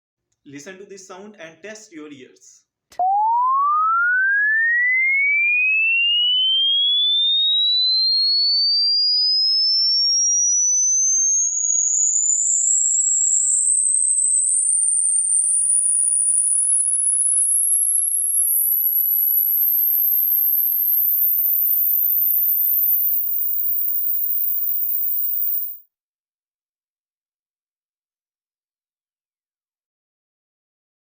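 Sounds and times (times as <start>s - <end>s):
rising pure tone: 3.0s - 7.0s, 18.0s - 25.8s.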